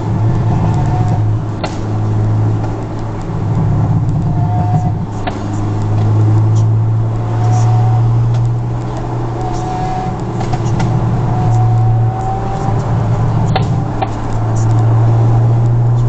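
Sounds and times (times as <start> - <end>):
car engine drone in cabin: 0.0 - 16.0
sharp exhaust snaps: 0.0 - 16.0.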